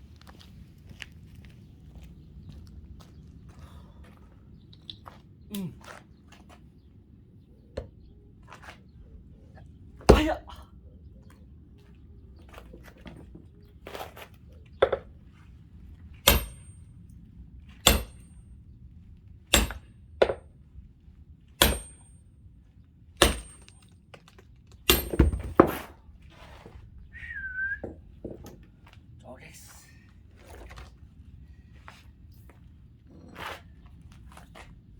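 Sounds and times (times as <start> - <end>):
axe splitting firewood: 10.0 - 10.5, 16.2 - 16.7, 17.8 - 18.3, 19.5 - 20.4, 21.6 - 22.0, 23.2 - 26.0
faint wavering whistle: 27.1 - 28.0.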